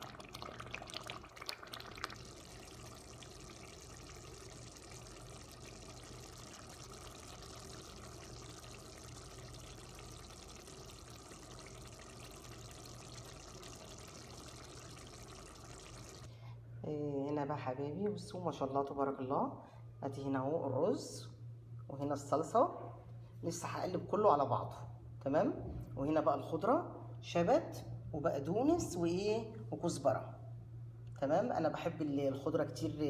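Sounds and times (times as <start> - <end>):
sauce simmering and sizzling: 0.0 - 16.3.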